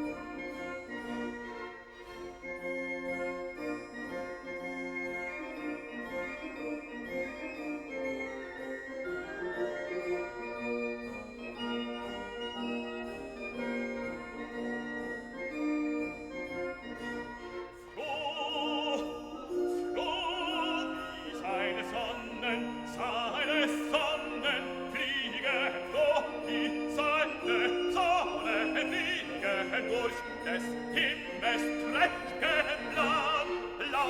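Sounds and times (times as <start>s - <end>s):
keyboard accompaniment: 0.0s - 34.0s
operatic singing: 16.8s - 34.0s.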